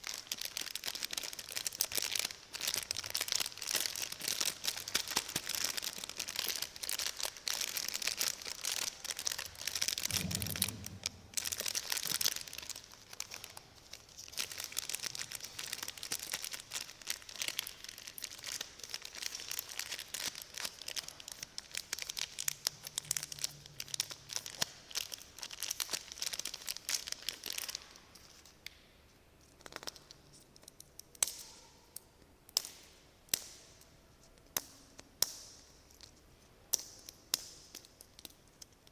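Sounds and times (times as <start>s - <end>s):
plastic wrapper crinkling and tearing: 0.0s - 28.6s, 29.6s - 31.5s.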